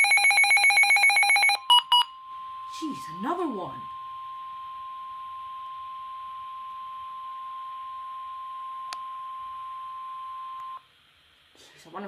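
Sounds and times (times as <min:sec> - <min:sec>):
high-pitched alarm beep: 0:00.0 - 0:04.8.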